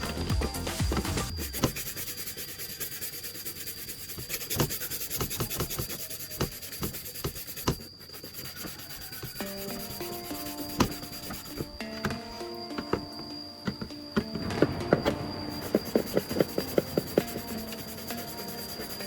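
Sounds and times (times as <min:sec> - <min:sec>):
simple background tune: 0:00.0 - 0:01.6, 0:09.3 - 0:19.0
hand sanding plastic: 0:00.1 - 0:19.0
steady high whine: 0:08.1 - 0:19.0.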